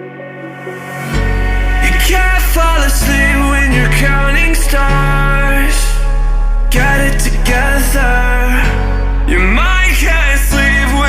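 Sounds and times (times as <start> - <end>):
pop song with singing: 0.0 - 11.0.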